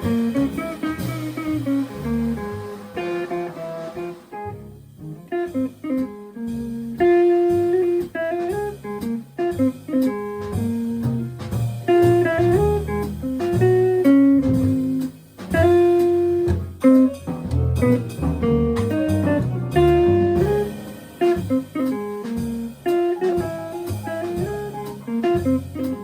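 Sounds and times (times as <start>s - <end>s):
guitar melody: 0.0s - 26.0s
jazz quartet playing: 0.0s - 26.0s.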